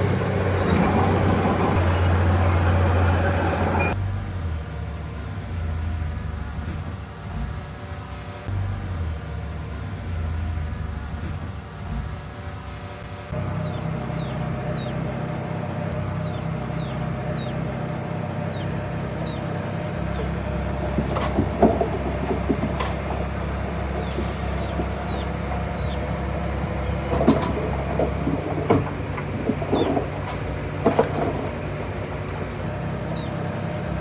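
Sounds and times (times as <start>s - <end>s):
diesel machine running: 0.0s - 34.0s
rock and metal clanking: 18.5s - 34.0s.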